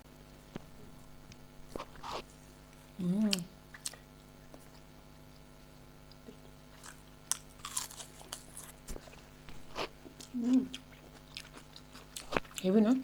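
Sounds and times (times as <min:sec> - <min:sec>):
people chewing and biting: 0:01.7 - 0:12.8
person humming: 0:10.3 - 0:10.8.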